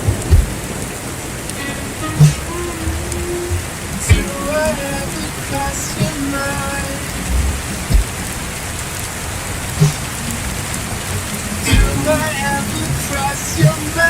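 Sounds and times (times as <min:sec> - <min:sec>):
soft low thuds: 0:00.0 - 0:00.8, 0:03.5 - 0:04.4, 0:07.3 - 0:08.6, 0:09.8 - 0:10.1, 0:11.7 - 0:12.1
rain hiss: 0:00.0 - 0:14.0
faint musical notes: 0:01.5 - 0:14.0.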